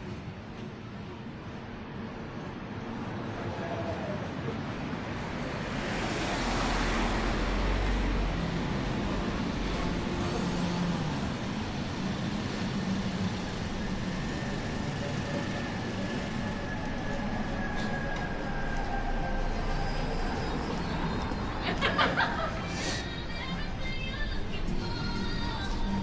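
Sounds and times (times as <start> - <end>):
city street noise: 0.0 - 26.0
vehicle passing with deep rumble: 5.2 - 16.0.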